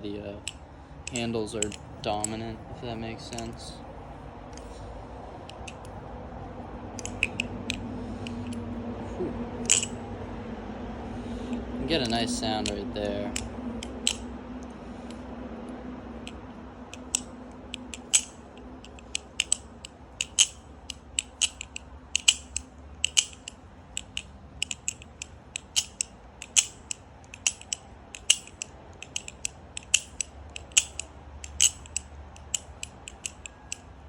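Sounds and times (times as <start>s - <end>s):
butterfly knife clicking: 0.4s - 2.4s, 7.0s - 8.6s, 9.6s - 10.0s, 11.5s - 15.2s, 16.2s - 33.9s.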